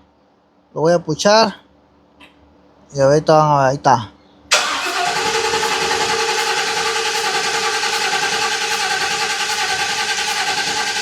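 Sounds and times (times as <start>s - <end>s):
engine starter cranking: 4.5s - 11.0s.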